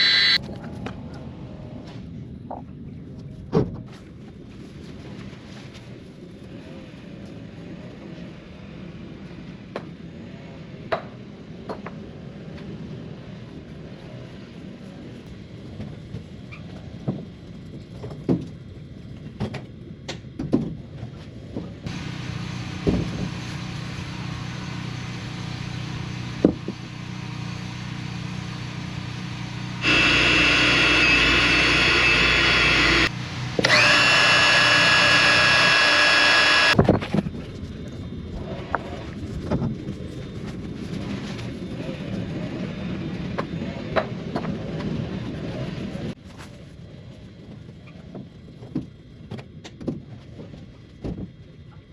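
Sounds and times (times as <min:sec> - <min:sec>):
power tool whining: 0:00.0 - 0:00.4, 0:29.6 - 0:36.8.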